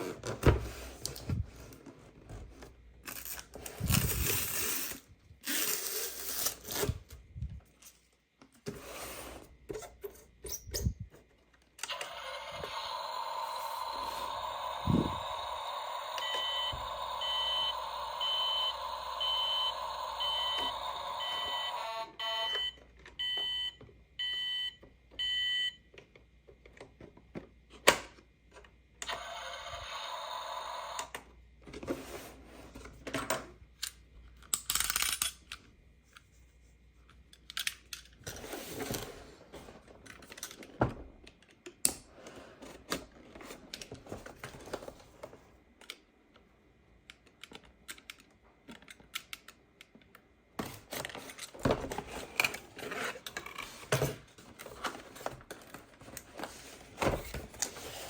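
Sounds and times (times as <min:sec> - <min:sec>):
toy electronic beeps: 0:11.9 - 0:25.8
plastic toys clicking and rattling: 0:33.8 - 0:35.7, 0:47.1 - 0:50.1.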